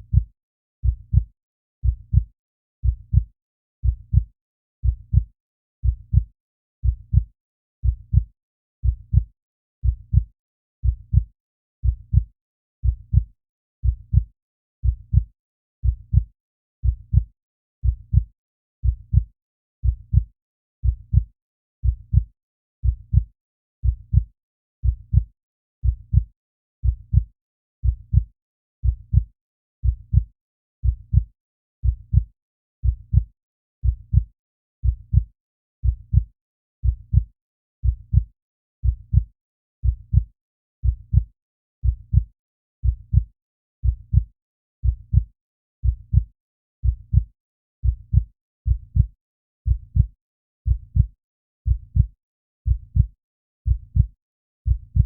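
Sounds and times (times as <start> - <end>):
heartbeat thumps: 0.0 - 1.2, 1.8 - 2.2, 2.8 - 3.2, 3.8 - 4.2, 4.8 - 5.2, 5.8 - 6.2, 6.8 - 9.2, 9.8 - 10.2, 10.8 - 11.2, 12.8 - 13.2, 13.8 - 14.2, 14.8 - 15.2, 15.8 - 18.2, 18.8 - 19.3, 20.8 - 21.2, 21.8 - 26.3, 28.1 - 34.3, 36.1 - 43.3, 44.1 - 45.2, 45.8 - 46.2, 46.8 - 47.2, 47.8 - 50.1, 50.7 - 51.1, 51.7 - 52.1, 52.7 - 53.1, 53.7 - 54.1, 54.7 - 55.0.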